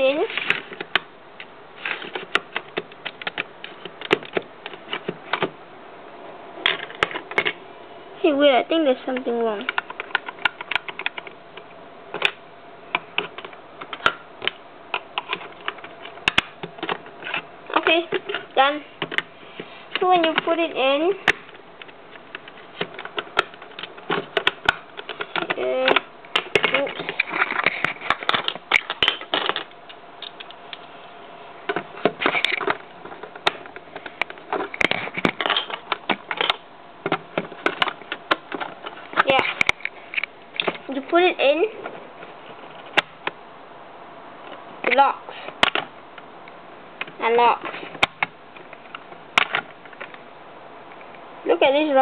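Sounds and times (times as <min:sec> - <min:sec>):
plastic bricks clicking and rattling: 0:21.2 - 0:30.6, 0:31.7 - 0:39.9.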